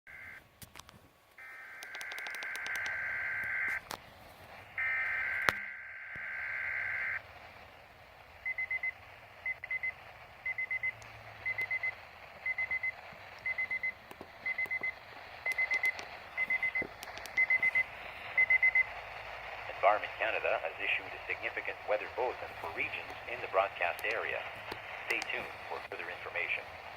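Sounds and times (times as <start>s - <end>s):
steady hiss: 11.0s - 26.9s.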